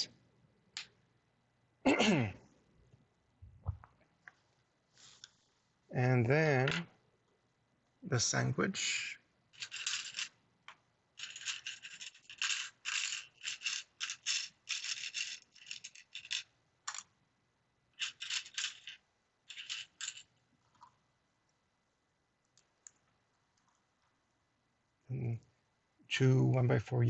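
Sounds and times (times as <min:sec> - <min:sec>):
plastic bricks rattling: 0:09.6 - 0:10.3, 0:11.2 - 0:17.1, 0:18.0 - 0:20.9.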